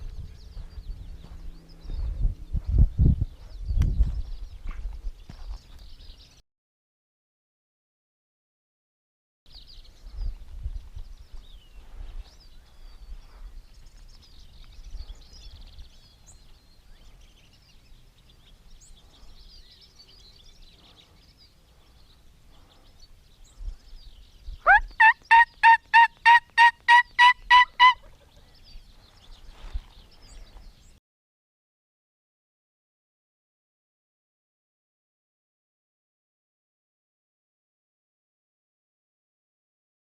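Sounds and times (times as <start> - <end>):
faint songbirds singing: 0.0 - 6.4, 9.5 - 31.0
turkey yelps: 24.7 - 28.3.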